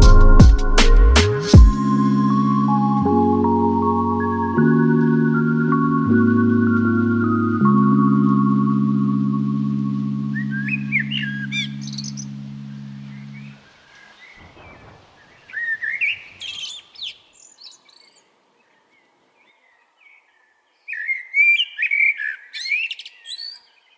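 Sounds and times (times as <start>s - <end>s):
low music drone: 0.0s - 13.6s
birds chirping: 2.4s - 23.9s.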